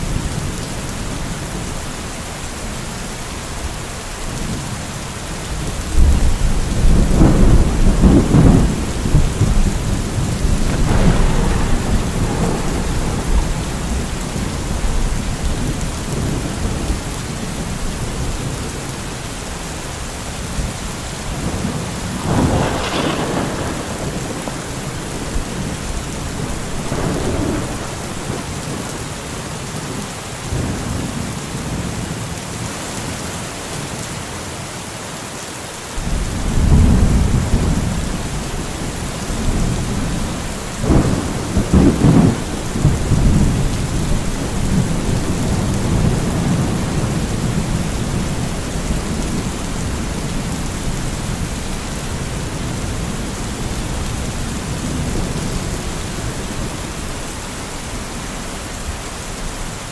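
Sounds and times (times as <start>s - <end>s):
steady rain: 0.0s - 59.9s
rolling thunder: 5.5s - 19.0s, 20.4s - 31.9s, 36.0s - 57.6s.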